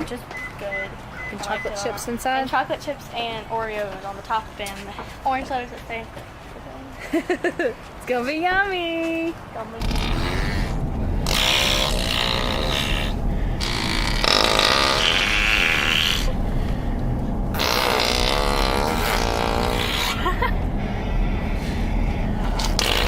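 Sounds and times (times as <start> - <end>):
car interior hum: 9.6 - 23.0
raspy fart noises: 9.8 - 16.4, 17.5 - 20.4, 22.5 - 23.0.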